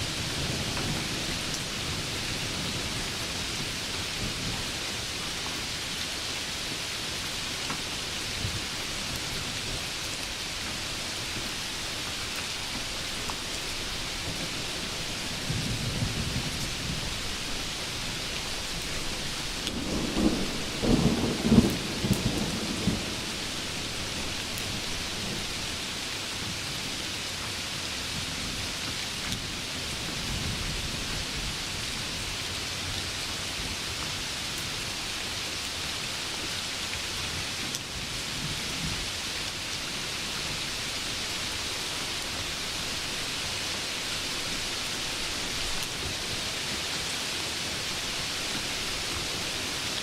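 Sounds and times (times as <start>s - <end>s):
heavy rain hissing: 0.0s - 50.0s
thunder rumbling: 12.5s - 25.6s.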